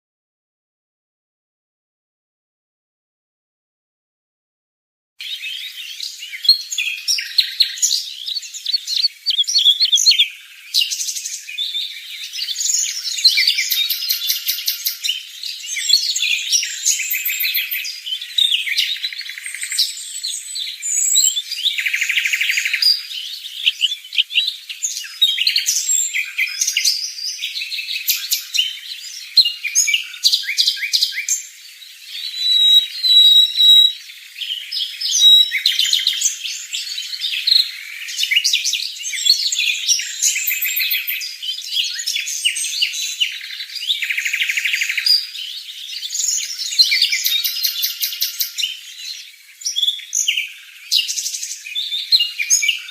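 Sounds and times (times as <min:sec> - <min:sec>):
small birds chirping: 0:05.2 - 0:52.9
rapid buzzy bird calls: 0:20.8 - 0:27.0, 0:27.7 - 0:38.3.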